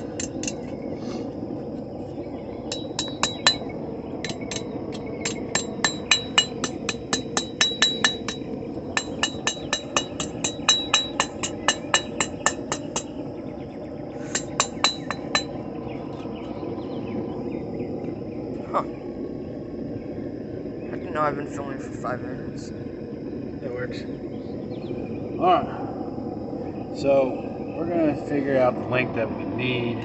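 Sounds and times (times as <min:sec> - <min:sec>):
hammer ringing on anvil: 0:02.7 - 0:04.6, 0:05.3 - 0:13.1, 0:14.3 - 0:15.6.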